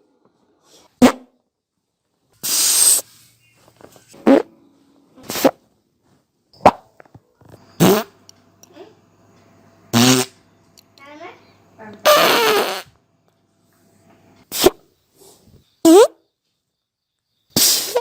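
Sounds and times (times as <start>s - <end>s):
human farts: 1.0s - 1.4s, 4.2s - 4.5s, 5.2s - 5.6s, 6.6s - 6.9s, 7.8s - 8.2s, 9.9s - 10.4s, 12.0s - 13.0s, 14.5s - 14.8s, 15.8s - 16.2s, 17.6s - 18.0s.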